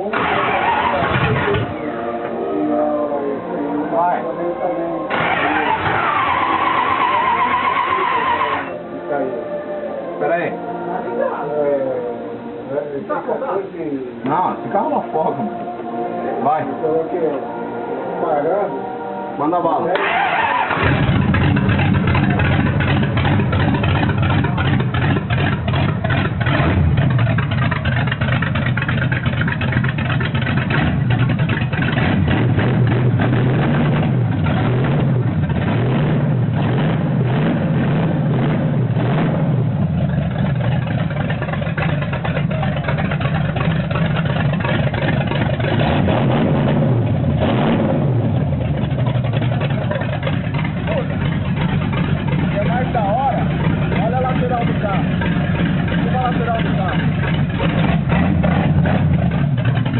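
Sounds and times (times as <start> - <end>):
car engine rumbling and revving: 0.0 - 2.4, 5.0 - 9.0, 20.0 - 59.9.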